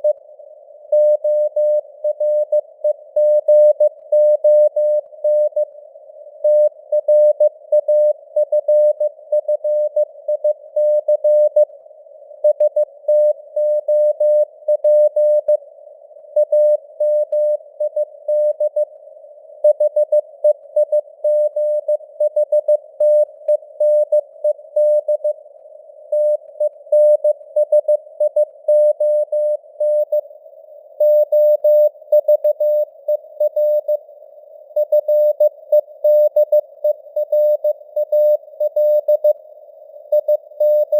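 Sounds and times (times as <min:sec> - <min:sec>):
faint radio hiss: 0:00.0 - 0:03.2, 0:04.9 - 0:07.0, 0:11.5 - 0:13.8, 0:15.4 - 0:28.7, 0:29.3 - 0:40.9
morse code beeps: 0:31.0 - 0:34.0, 0:34.8 - 0:39.4, 0:40.1 - 0:40.9.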